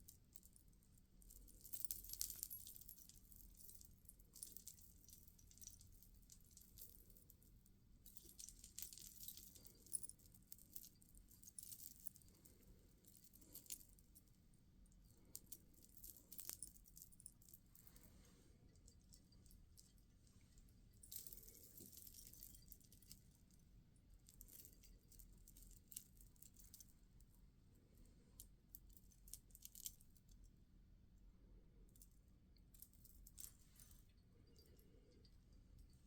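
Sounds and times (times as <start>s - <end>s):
beads clicking and rattling: 0.0s - 14.2s, 15.2s - 18.0s, 21.0s - 23.2s.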